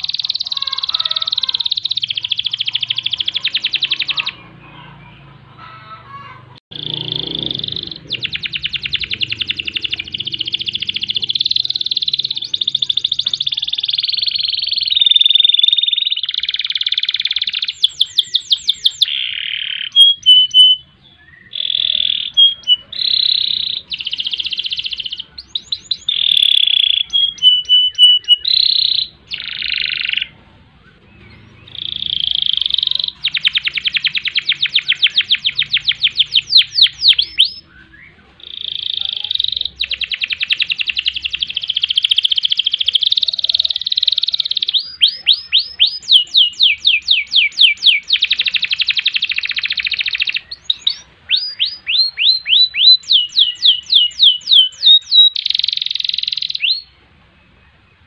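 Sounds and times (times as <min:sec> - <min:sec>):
canary singing trills: 0:00.0 - 0:58.0.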